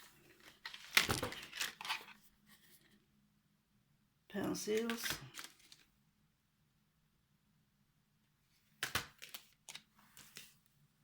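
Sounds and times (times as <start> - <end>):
pencil packaging clicks and rustles: 0.0 - 3.0, 4.4 - 6.0, 8.7 - 10.8.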